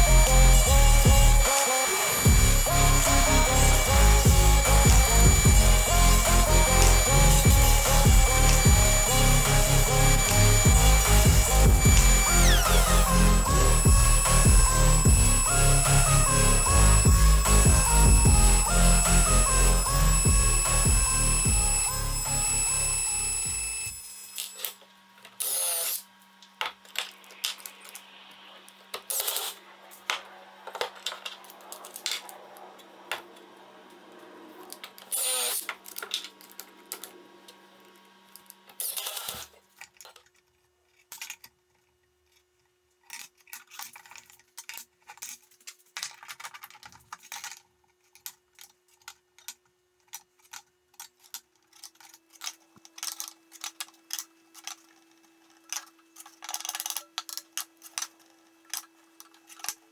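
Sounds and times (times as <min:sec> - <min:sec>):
short noisy bursts: 0:00.0 - 0:24.1.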